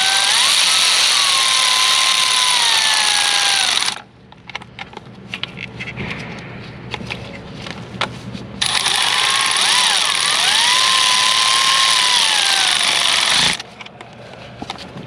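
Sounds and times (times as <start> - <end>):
power tool whirring: 0.0 - 4.0, 8.6 - 13.6.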